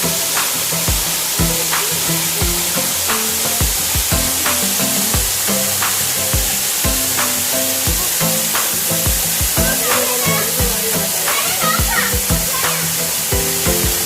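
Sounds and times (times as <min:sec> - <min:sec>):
background music with low beat: 0:00.0 - 0:14.0
waterfall rushing: 0:00.0 - 0:14.0.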